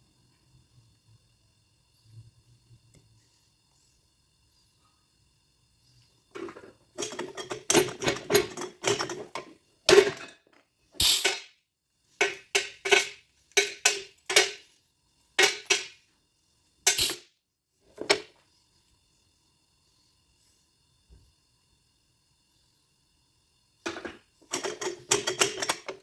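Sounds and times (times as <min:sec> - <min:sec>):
scrapes and knocks on battery: 0:12.2 - 0:14.6, 0:23.9 - 0:26.0.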